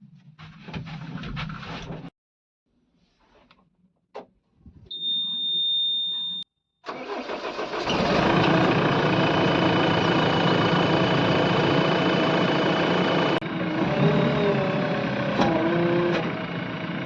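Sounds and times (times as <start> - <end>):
high steady beep: 4.9 - 6.4
diesel engine cranking and running: 6.9 - 17.0.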